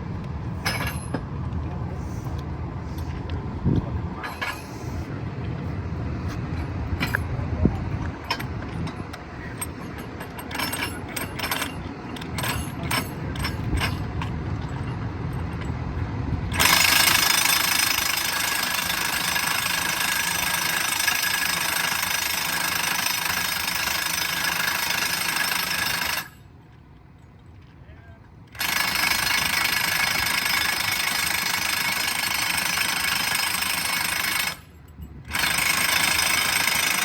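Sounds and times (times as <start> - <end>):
metallic knocks and clanks: 0.6 - 1.3, 4.2 - 4.9, 6.3 - 15.8
loud power tool: 16.6 - 26.4, 28.6 - 34.6, 35.3 - 37.0.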